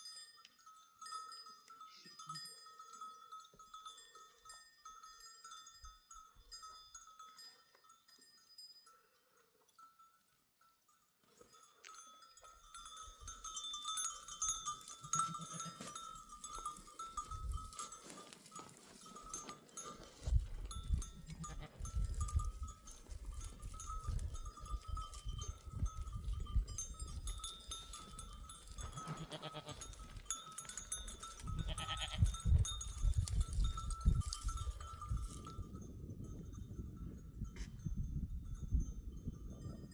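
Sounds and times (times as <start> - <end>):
animal bells clinking: 0.0 - 39.9
goats and sheep bleating: 14.9 - 16.0, 21.0 - 22.0, 28.8 - 30.1, 31.5 - 32.3.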